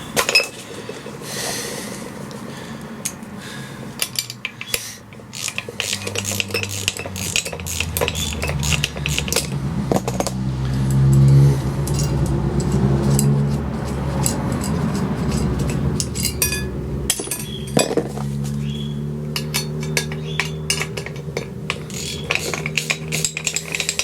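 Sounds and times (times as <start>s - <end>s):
metal tools clinking: 0.0s - 1.5s, 3.9s - 24.0s
low steady hum: 5.5s - 24.0s.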